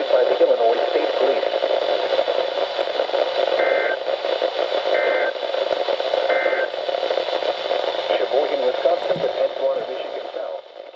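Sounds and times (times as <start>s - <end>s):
radio hiss and static: 0.0s - 10.9s
warbling data bursts: 3.4s - 4.1s, 4.8s - 6.9s.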